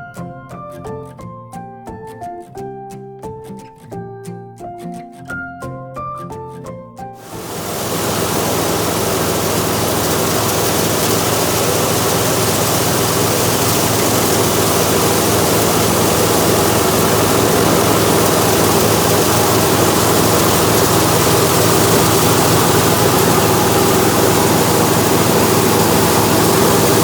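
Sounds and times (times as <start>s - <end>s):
farming machine engine running: 7.2s - 27.0s
piano music: 7.2s - 27.0s.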